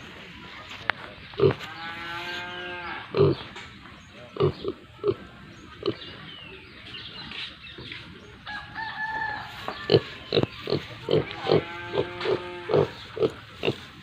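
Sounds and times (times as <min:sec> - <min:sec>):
pig grunting: 0:01.4 - 0:03.4, 0:09.9 - 0:13.9
drawn-out animal calls: 0:09.9 - 0:13.9.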